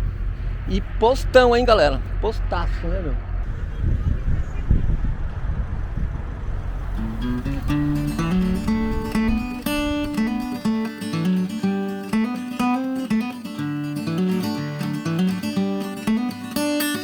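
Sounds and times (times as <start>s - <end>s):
acoustic guitar playing: 6.6s - 17.0s.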